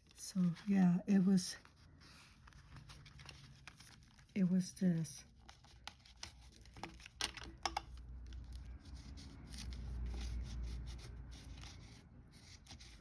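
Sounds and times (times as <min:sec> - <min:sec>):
low paper rubbing: 0:08.4 - 0:13.0.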